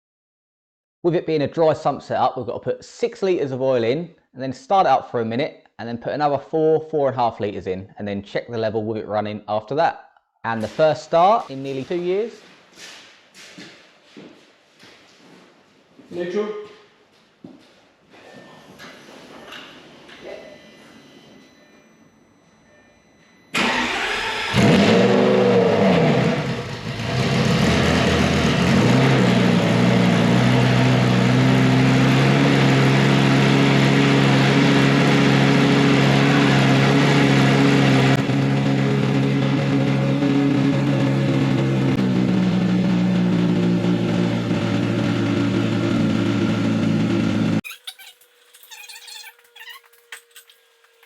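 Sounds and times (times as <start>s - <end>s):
car engine starting and idling: 23.5s - 51.0s.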